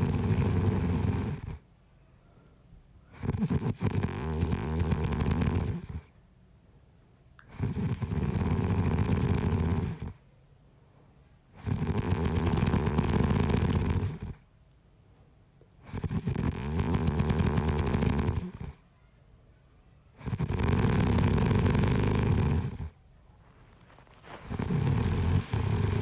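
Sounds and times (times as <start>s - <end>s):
man snoring: 0.0s - 1.6s, 3.2s - 6.0s, 7.5s - 10.2s, 11.6s - 14.4s, 15.9s - 18.7s, 20.2s - 22.9s, 24.3s - 26.0s.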